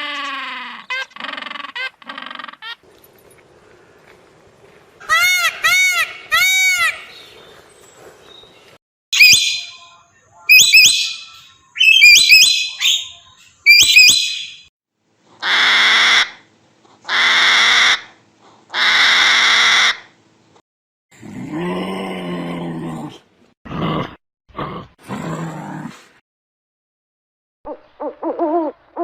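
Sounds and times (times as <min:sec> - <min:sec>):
bird calling: 0:09.2 - 0:14.7.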